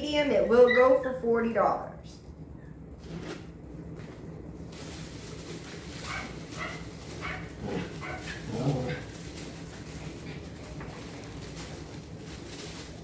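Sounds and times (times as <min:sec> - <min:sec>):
dog whining and yipping: 0:00.3 - 0:01.2.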